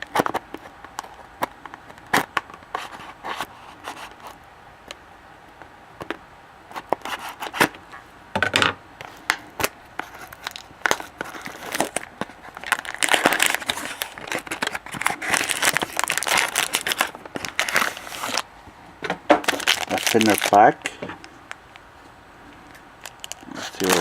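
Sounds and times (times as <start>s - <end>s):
foil pack crinkling and tearing: 9.6s - 18.5s, 19.4s - 20.9s, 23.0s - 24.0s
cardboard box being opened: 12.6s - 18.4s.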